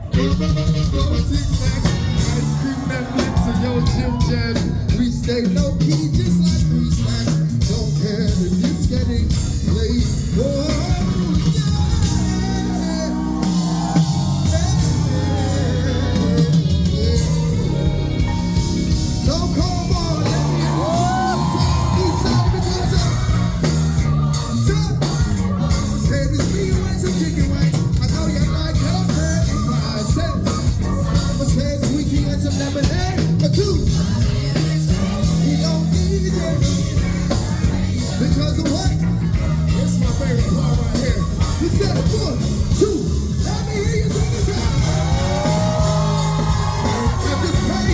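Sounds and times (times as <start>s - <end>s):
lead singer's vocal runs: 0.0s - 47.9s
live soul-pop band playing: 0.0s - 47.9s.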